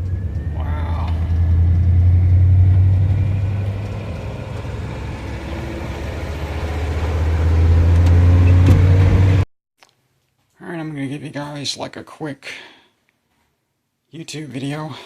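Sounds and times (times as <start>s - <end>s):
low engine rumble: 0.0s - 9.4s.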